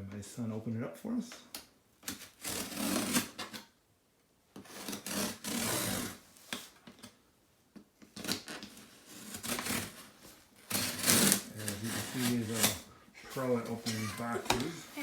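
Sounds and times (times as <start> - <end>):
tape and cardboard tearing: 2.0 - 3.7, 4.6 - 7.1, 8.0 - 12.9, 13.5 - 15.0.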